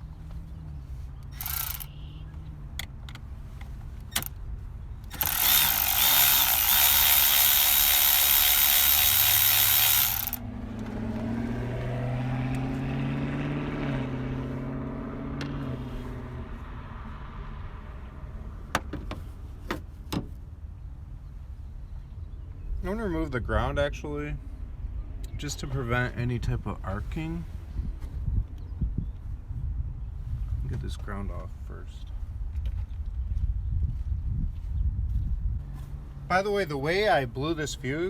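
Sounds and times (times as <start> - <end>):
ratchet wrench clicking: 1.2 - 2.0, 4.0 - 4.3, 5.1 - 10.4.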